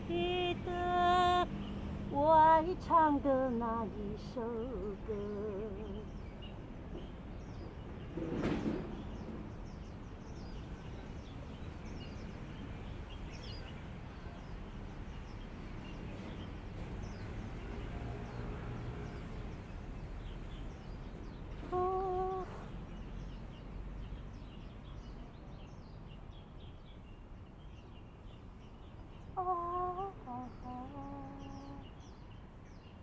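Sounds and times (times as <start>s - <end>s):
small birds chirping: 0.0s - 33.0s.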